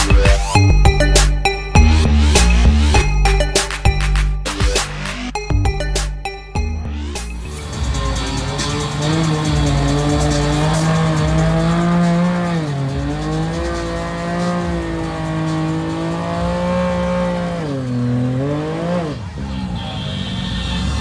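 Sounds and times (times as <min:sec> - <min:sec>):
engine revving: 0:06.9 - 0:21.0.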